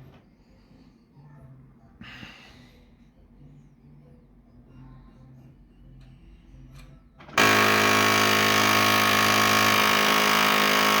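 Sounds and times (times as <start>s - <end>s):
printer mechanism grinding: 7.4s - 11.0s.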